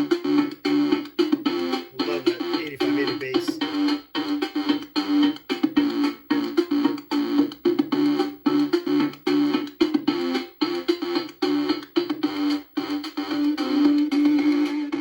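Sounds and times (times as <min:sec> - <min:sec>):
chiptune music: 0:01.9 - 0:13.8.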